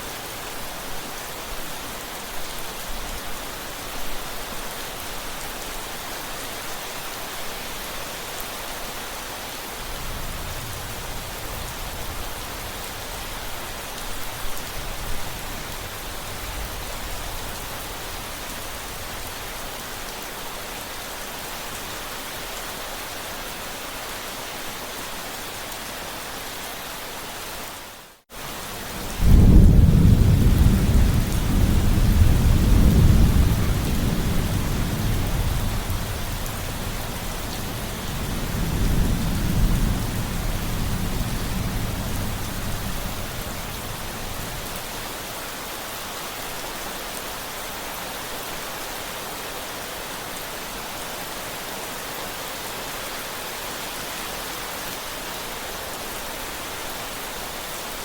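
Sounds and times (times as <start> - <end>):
steady rain: 0.0 - 58.0
rolling thunder: 28.8 - 44.8.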